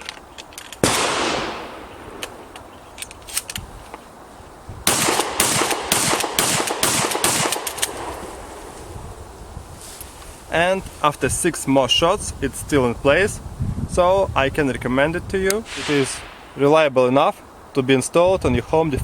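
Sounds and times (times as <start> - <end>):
shotgun shots: 0.8 - 2.6, 4.9 - 8.8, 15.7 - 16.6.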